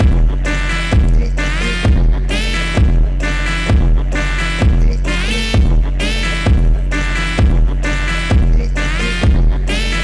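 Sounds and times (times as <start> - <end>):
sliding melody: 3.3 - 8.3.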